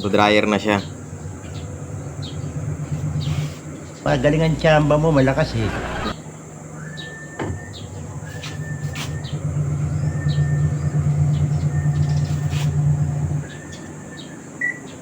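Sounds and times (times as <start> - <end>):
washing machine spinning: 0.0 - 5.5, 7.6 - 13.7.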